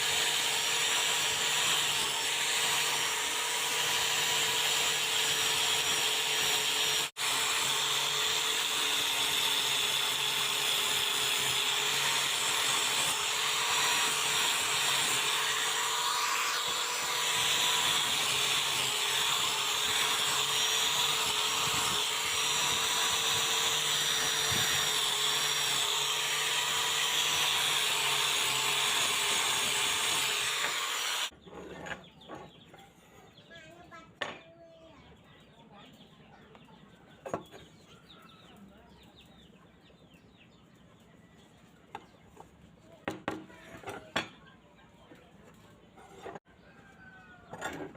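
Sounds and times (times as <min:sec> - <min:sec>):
power tool grinding metal: 0:00.0 - 0:31.3.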